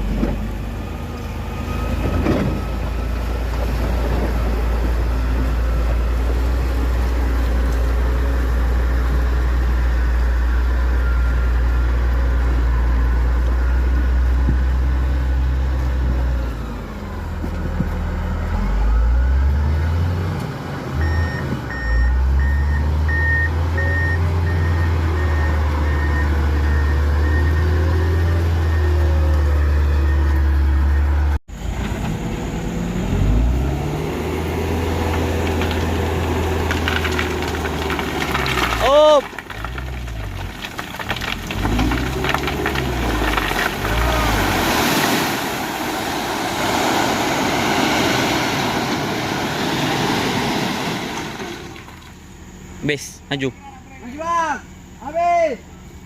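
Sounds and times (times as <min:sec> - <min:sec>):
heavy vehicle engine rumbling: 0:00.0 - 0:56.0
reversing alarm beeping: 0:21.0 - 0:31.4.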